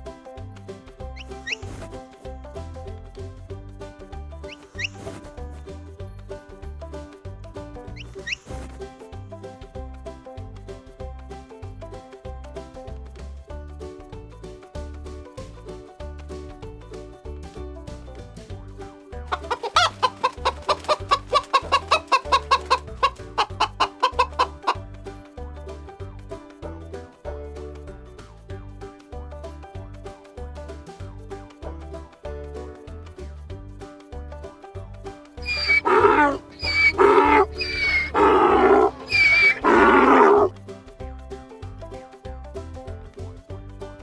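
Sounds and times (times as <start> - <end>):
background music: 0.0 - 44.0
chicken clucking: 19.3 - 24.8, 35.4 - 40.5
farm animal calling loudly: 19.3 - 24.8, 35.4 - 40.5.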